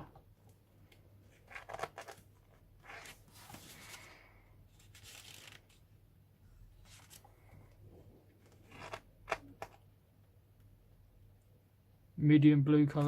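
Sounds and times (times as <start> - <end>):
book pages turning: 1.3 - 5.9, 6.8 - 7.5, 8.4 - 9.8
paper sliding: 2.8 - 4.1.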